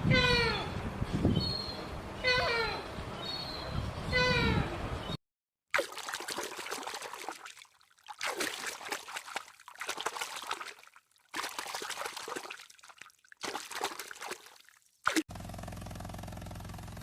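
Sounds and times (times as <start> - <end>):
water trickling and splashing: 5.7 - 15.3.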